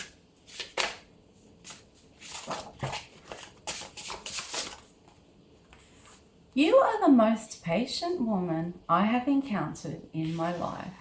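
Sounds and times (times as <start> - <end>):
cards being shuffled: 0.0 - 4.9.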